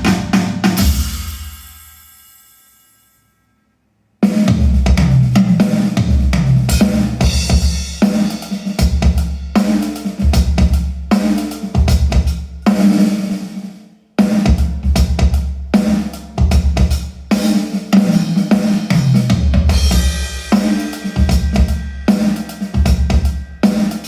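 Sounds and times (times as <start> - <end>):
music with drum kit: 0.0 - 3.2, 4.2 - 24.0
heavy bass line: 19.1 - 24.0.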